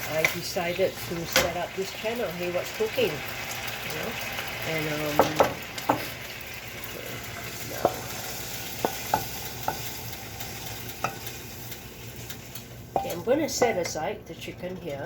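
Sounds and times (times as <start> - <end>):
chicken sizzling in a pan: 0.0 - 14.5
utensil clicking against pan: 8.8 - 14.0.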